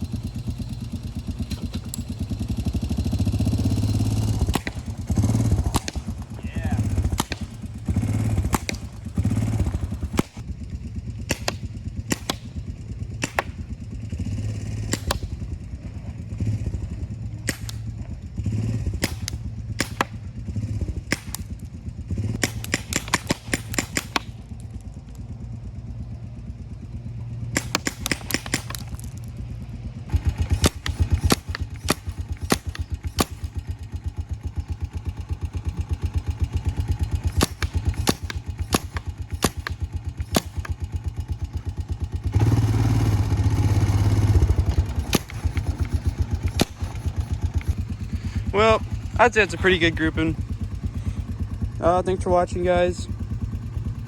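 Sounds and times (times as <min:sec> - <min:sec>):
atv engine running: 0:00.0 - 0:54.0
paintball gun firing pops: 0:03.6 - 0:10.4, 0:11.2 - 0:13.8, 0:14.8 - 0:15.5, 0:17.4 - 0:18.2, 0:18.8 - 0:25.2, 0:27.5 - 0:29.4, 0:30.1 - 0:42.2, 0:44.4 - 0:48.5.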